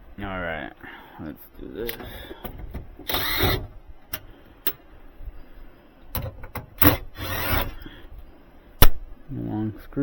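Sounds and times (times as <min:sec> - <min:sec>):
screws clicking and scraping in metal: 0:01.9 - 0:04.2, 0:06.2 - 0:07.8.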